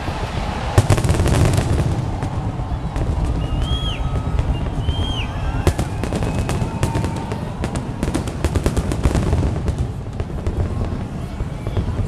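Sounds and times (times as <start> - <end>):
firework whistle: 0.0 - 12.0
fireworks booming: 0.0 - 12.0
fireworks crackling: 0.0 - 12.0.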